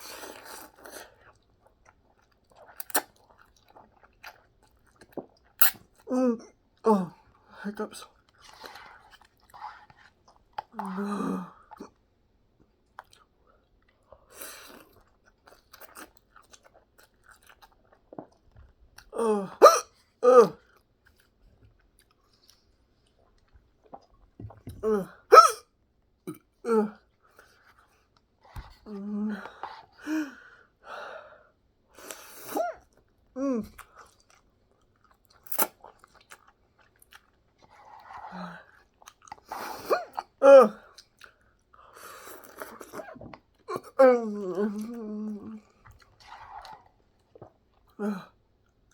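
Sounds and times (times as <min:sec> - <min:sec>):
person chewing food: 0:00.0 - 0:05.8, 0:08.1 - 0:11.0, 0:12.8 - 0:19.1, 0:20.6 - 0:24.8, 0:32.0 - 0:48.9
small mouth clicks: 0:02.8 - 0:03.2
loud voiced hiccups: 0:19.4 - 0:20.6, 0:24.8 - 0:25.7.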